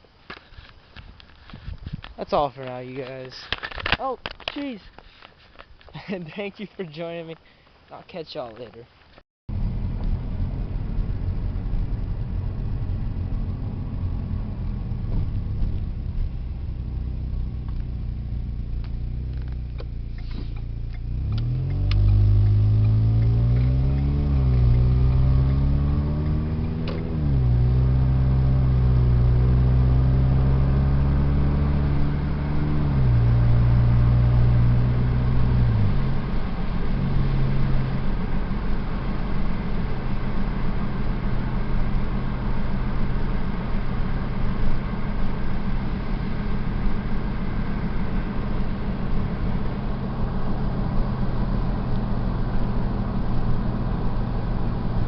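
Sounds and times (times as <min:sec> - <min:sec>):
car engine accelerating: 0:09.5 - 0:55.0.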